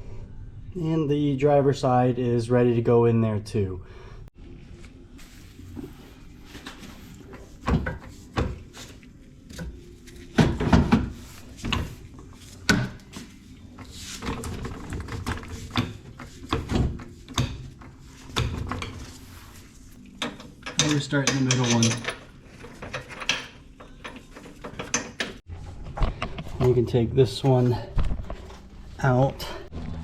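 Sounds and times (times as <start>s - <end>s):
tools and metal parts clunking: 6.6s - 28.6s.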